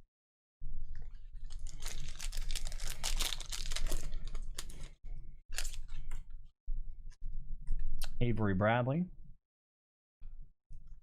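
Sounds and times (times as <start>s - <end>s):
wrapper crinkling: 1.4s - 6.0s.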